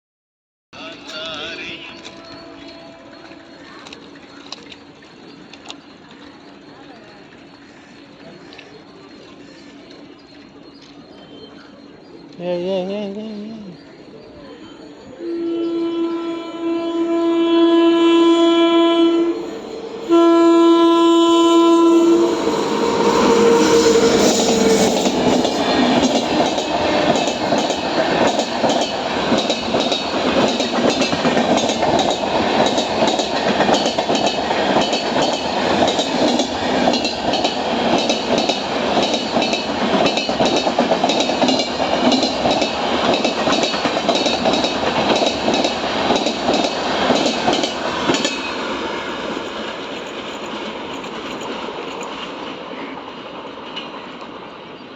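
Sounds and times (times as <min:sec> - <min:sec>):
train rumble: 0:00.8 - 0:54.9
train wheels clattering over rail joints: 0:22.6 - 0:52.6.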